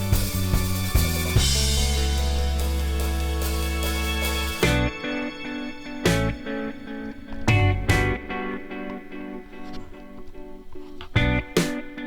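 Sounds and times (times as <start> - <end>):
sustained bass and chords: 0.0 - 8.7, 11.2 - 11.8.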